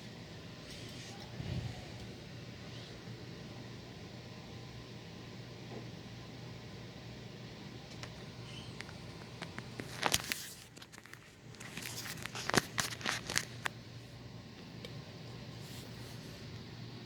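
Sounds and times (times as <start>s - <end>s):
faint steady hum: 0.0s - 17.0s
crinkling and clicking handling: 7.9s - 13.8s.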